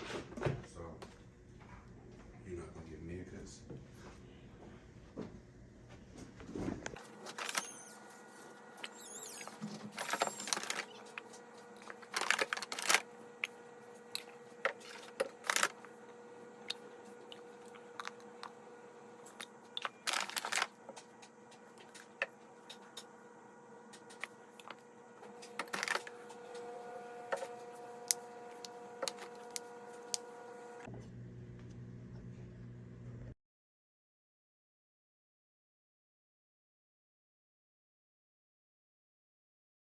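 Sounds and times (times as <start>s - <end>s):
packaging crinkling and rustling: 6.8s - 8.0s, 8.8s - 13.1s, 14.2s - 15.9s, 19.2s - 21.2s, 24.0s - 26.2s, 28.6s - 29.7s.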